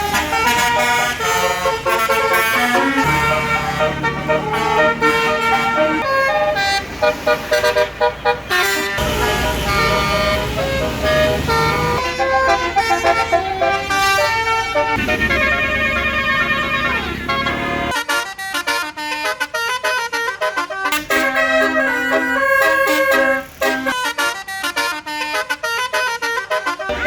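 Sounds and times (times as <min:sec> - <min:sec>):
bus engine rumble: 0:00.0 - 0:18.0, 0:20.9 - 0:24.6
multi-tone bus horn melody: 0:00.0 - 0:27.0.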